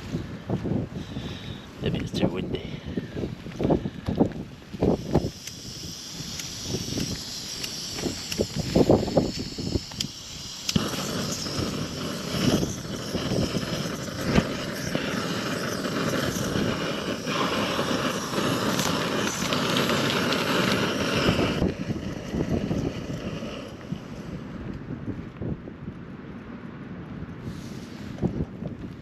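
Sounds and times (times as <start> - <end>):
wind on microphone: 0.0 - 29.0
gas stove burner hissing: 2.6 - 24.4.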